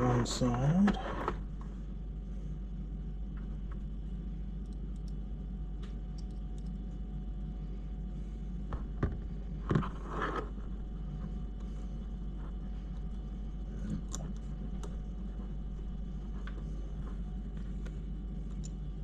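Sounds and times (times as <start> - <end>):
steady low hum: 0.0 - 19.0
small parts clicking: 6.1 - 6.8.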